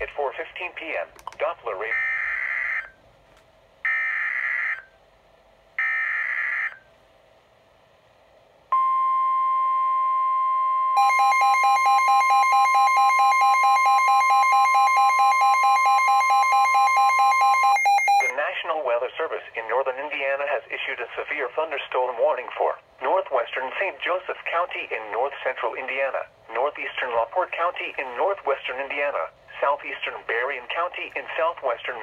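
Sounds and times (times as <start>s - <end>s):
warning alarm tone: 1.9s - 3.0s, 3.9s - 4.9s, 5.8s - 6.9s, 8.7s - 18.4s
weather radio alert beeping: 11.0s - 18.4s.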